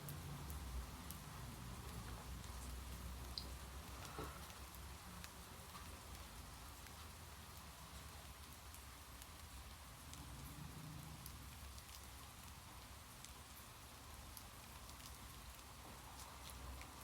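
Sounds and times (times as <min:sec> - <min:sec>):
faint steady rain: 0:00.0 - 0:17.0.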